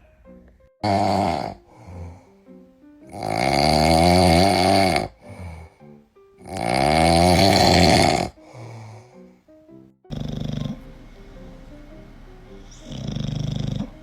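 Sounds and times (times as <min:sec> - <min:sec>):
soft background music: 0:00.0 - 0:14.0
dog snoring: 0:00.8 - 0:02.3, 0:03.1 - 0:05.8, 0:06.4 - 0:09.1, 0:10.1 - 0:10.9, 0:12.6 - 0:14.0.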